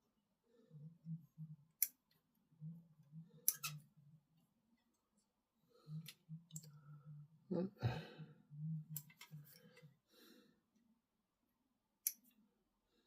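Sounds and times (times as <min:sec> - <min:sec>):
faint low pulsing: 0:00.1 - 0:04.7.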